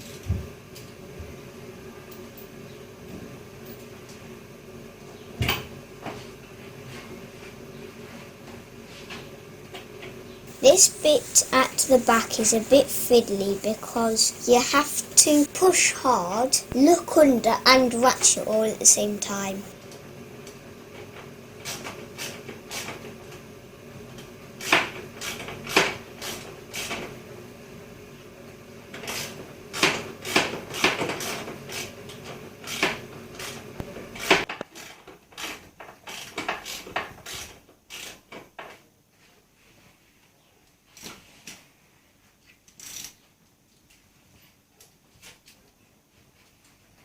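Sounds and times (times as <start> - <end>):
steady background hum: 10.5 - 19.7.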